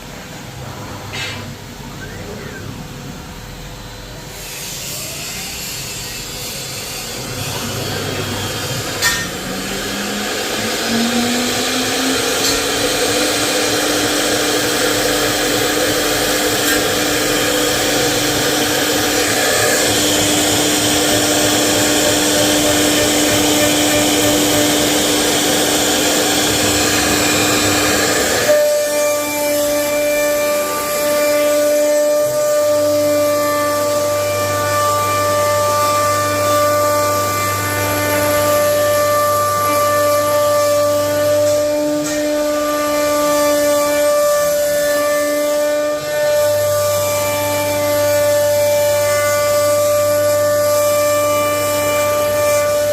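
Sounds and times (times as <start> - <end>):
spindle whine: 0.0 - 42.8
router spindle cutting wood: 1.2 - 52.9
low hum: 7.0 - 14.9.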